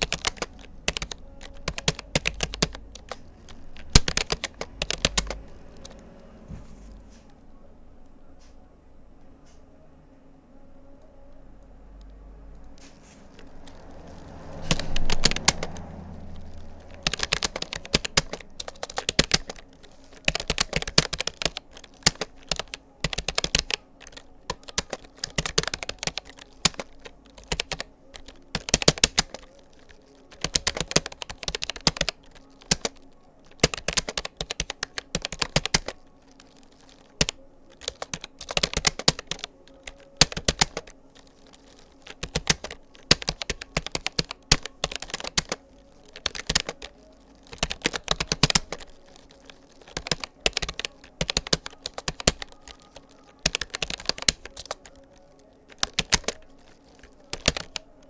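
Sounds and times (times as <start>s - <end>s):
computer keyboard typing: 0.0s - 6.6s, 12.0s - 58.0s.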